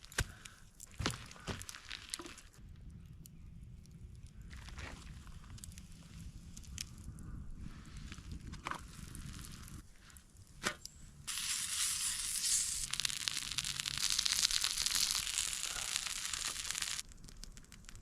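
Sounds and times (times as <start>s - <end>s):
sausages and eggs sizzling: 11.3s - 17.1s.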